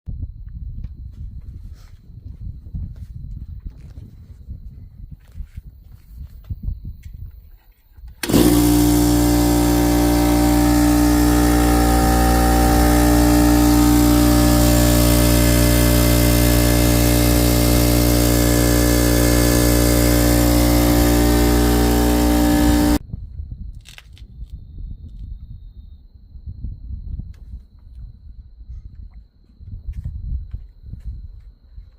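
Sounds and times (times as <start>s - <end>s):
air compressor running: 8.2s - 23.0s.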